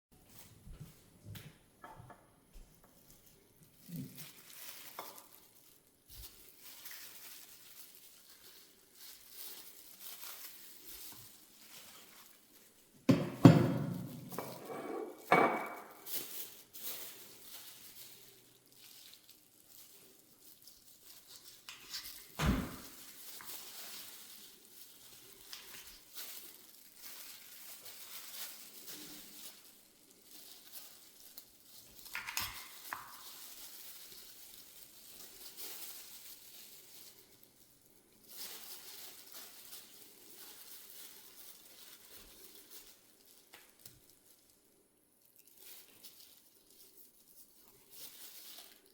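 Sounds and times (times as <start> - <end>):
pans and dishes clattering: 13.1 - 15.9.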